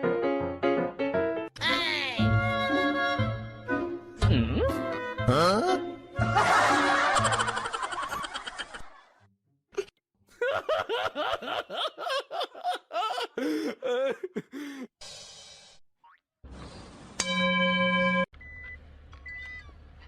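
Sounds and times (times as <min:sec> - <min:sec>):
music: 0:00.0 - 0:07.5
person laughing in bursts: 0:06.3 - 0:08.9, 0:09.8 - 0:14.9.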